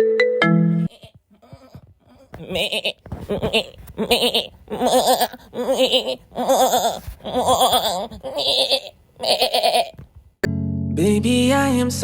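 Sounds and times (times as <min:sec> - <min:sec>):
goat bleating: 0:00.9 - 0:10.1.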